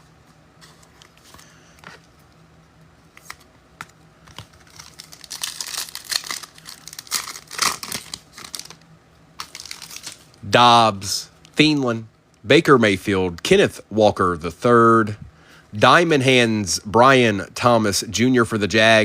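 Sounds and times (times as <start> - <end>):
trading cards being handled: 0.2 - 2.4, 3.0 - 8.8, 9.4 - 10.4
wrapper torn open and crinkled: 4.6 - 8.8, 9.4 - 10.4.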